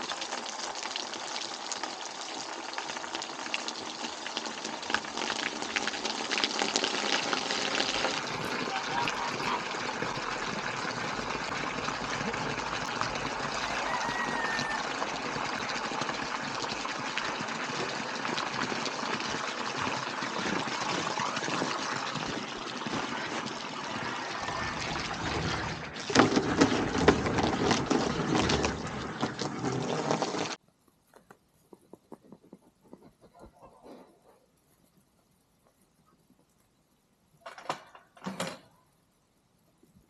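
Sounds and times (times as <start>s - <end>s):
water running: 0.0s - 30.6s.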